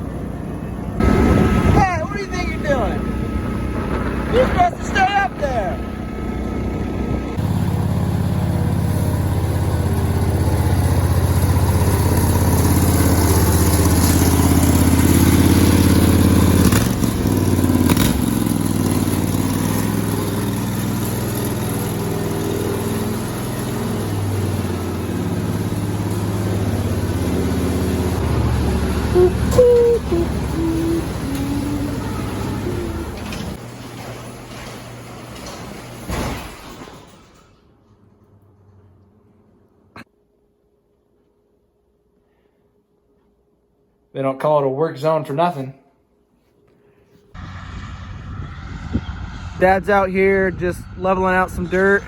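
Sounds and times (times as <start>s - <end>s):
lawn mower engine running: 0.0s - 36.3s.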